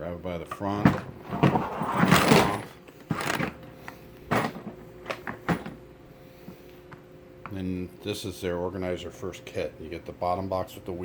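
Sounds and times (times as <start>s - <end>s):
plastic case scraping rattle: 0.6s - 3.6s.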